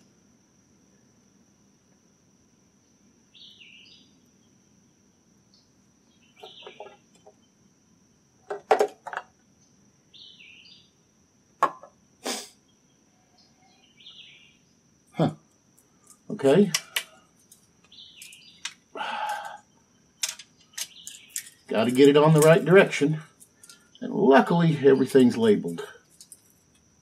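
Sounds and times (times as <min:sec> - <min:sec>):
bird calling: 0:06.1 - 0:07.1
faint high whine: 0:09.4 - 0:27.0
chain clicking and knocking: 0:20.2 - 0:22.7, 0:26.0 - 0:26.8.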